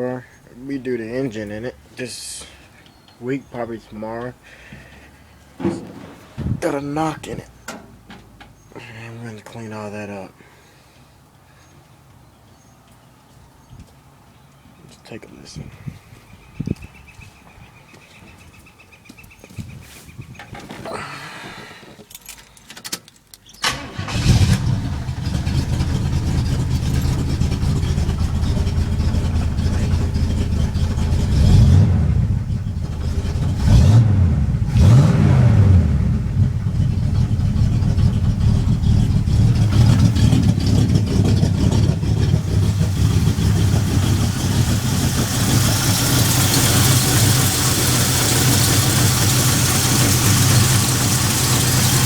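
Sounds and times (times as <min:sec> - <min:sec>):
man talking: 0:00.0 - 0:02.6, 0:03.2 - 0:04.4, 0:06.5 - 0:07.6, 0:08.8 - 0:10.4, 0:14.9 - 0:15.8
car engine cranking and idling: 0:22.1 - 0:52.0
engine revving: 0:23.6 - 0:52.0.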